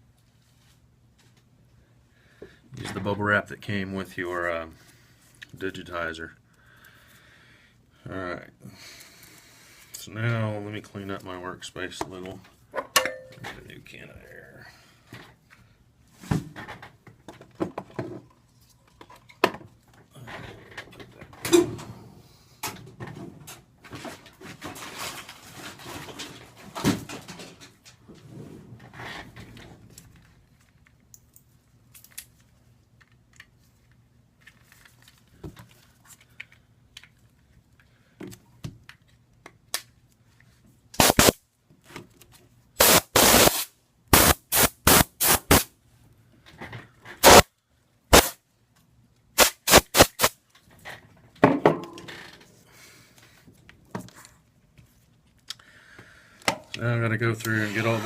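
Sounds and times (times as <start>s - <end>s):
compressed air blasts: 41.0s - 41.4s, 42.8s - 45.7s, 47.2s - 47.5s, 48.1s - 48.4s, 49.4s - 50.4s.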